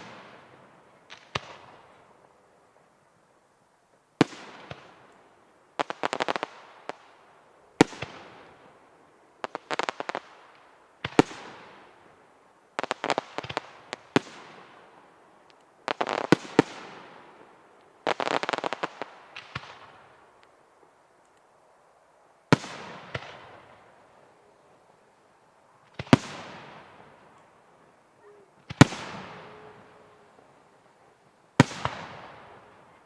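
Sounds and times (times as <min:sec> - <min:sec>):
fireworks crackling: 0:00.0 - 0:02.8, 0:04.2 - 0:21.6, 0:22.4 - 0:33.0
loud firework bangs echoing: 0:25.9 - 0:27.4, 0:28.2 - 0:30.7, 0:31.6 - 0:33.0.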